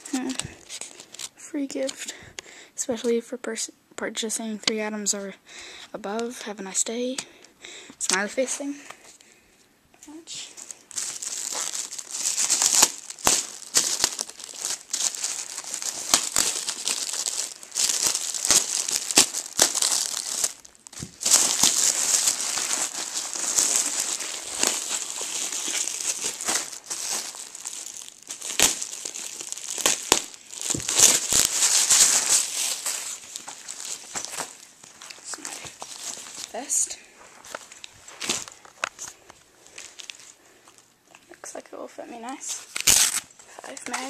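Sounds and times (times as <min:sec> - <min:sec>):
packaging crinkling and rustling: 0:00.1 - 0:02.0, 0:10.4 - 0:41.3, 0:42.5 - 0:44.0.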